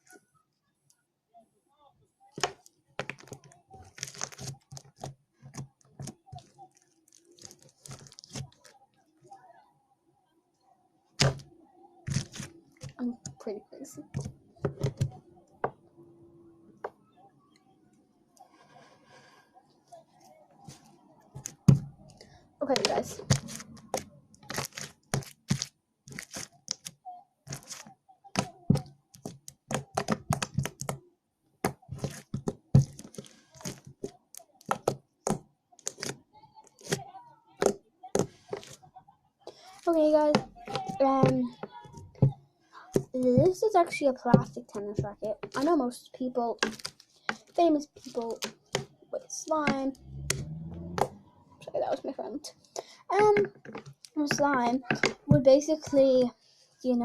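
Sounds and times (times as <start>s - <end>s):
slime popping and crackling: 2.4s - 5.1s, 22.6s - 27.8s, 28.4s - 31.0s, 31.6s - 36.2s, 46.5s - 50.9s.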